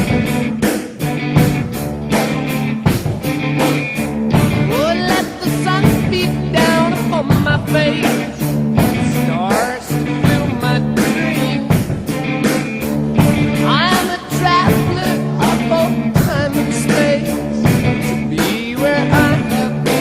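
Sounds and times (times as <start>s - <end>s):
rock music: 0.0s - 20.0s
steady drum beat: 0.0s - 20.0s.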